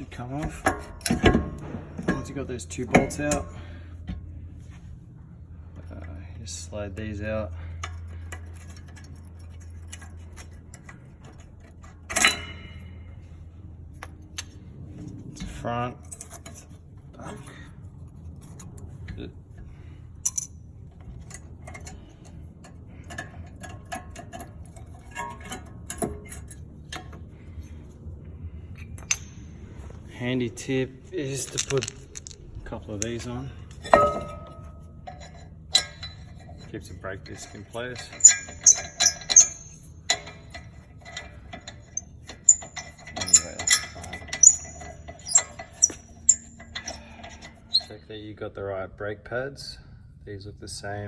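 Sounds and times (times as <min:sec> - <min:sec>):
steady low hum: 0:00.0 - 0:51.0
clicks of metal parts handled: 0:20.2 - 0:20.5, 0:31.2 - 0:36.2
metal parts clinking: 0:20.2 - 0:20.6, 0:30.6 - 0:48.0.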